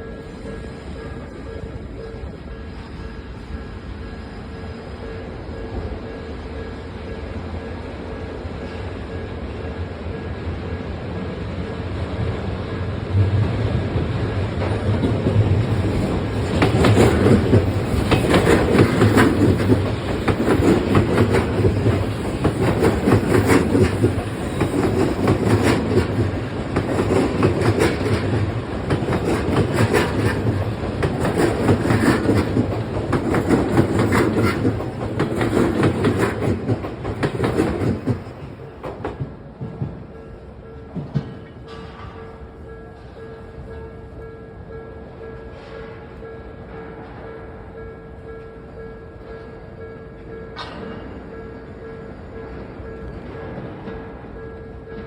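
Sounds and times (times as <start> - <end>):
train wheels clacking over rail joints: 14.5 - 40.2.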